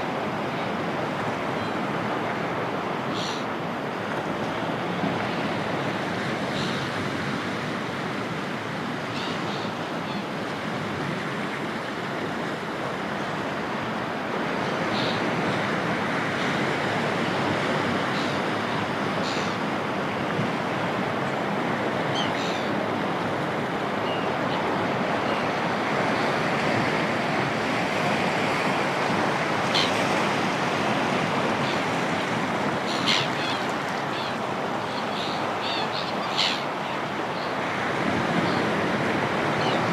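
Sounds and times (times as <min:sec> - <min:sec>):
sea surf washing: 0:00.0 - 0:39.9
seagull calls: 0:29.7 - 0:30.0, 0:32.8 - 0:37.1.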